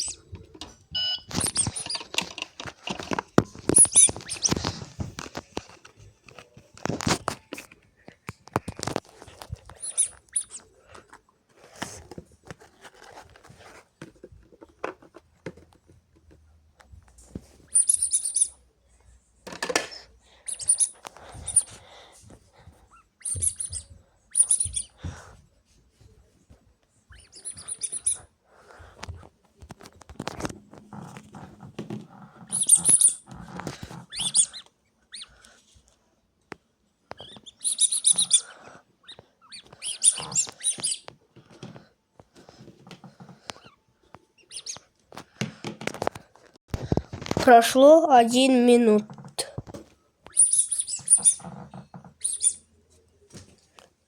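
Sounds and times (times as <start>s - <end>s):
guinea pig squeaking: 0.0s - 5.3s, 8.6s - 11.0s, 17.5s - 18.9s, 19.9s - 21.8s, 22.8s - 25.4s, 27.0s - 28.4s, 32.2s - 35.8s, 37.1s - 41.3s, 43.4s - 45.0s, 50.2s - 53.0s
scrabbling and pattering clicks: 0.1s - 16.4s.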